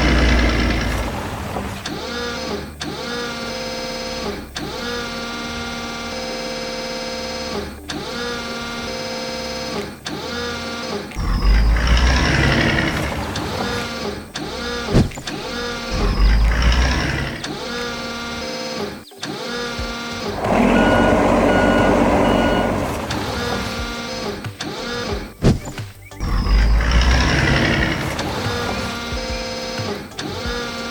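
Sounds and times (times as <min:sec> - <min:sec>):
heavy vehicle engine rumbling: 0:00.0 - 0:02.8, 0:11.2 - 0:17.6, 0:20.2 - 0:24.5, 0:25.5 - 0:29.3
reversing beep: 0:20.3 - 0:24.1, 0:25.6 - 0:29.0.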